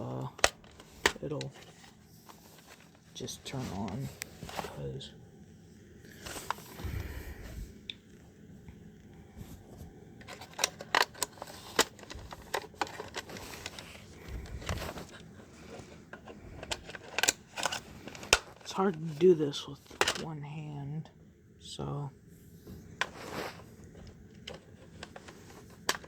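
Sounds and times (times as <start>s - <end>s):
plastic clicks and rattles: 0.2s - 1.7s, 10.2s - 19.2s, 19.9s - 20.3s, 23.8s - 26.0s.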